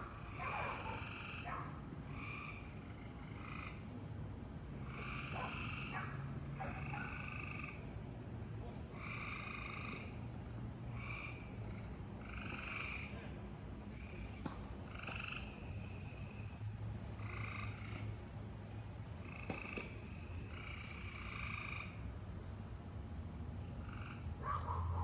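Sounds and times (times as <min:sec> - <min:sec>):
frog calling: 0:00.0 - 0:03.9, 0:04.8 - 0:07.9, 0:08.9 - 0:10.2, 0:10.9 - 0:18.2, 0:19.2 - 0:22.0, 0:23.8 - 0:25.0
steady low hum: 0:00.0 - 0:25.0.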